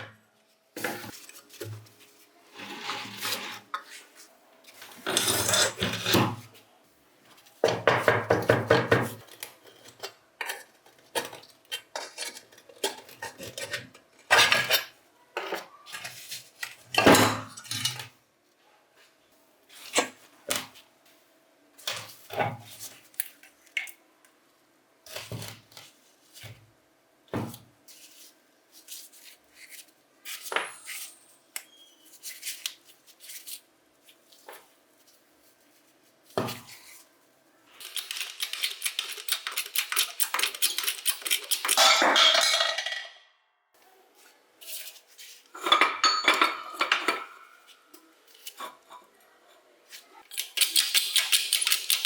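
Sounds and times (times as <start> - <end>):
small metal pieces rattling: 37.8 - 42.8, 50.3 - 52.0.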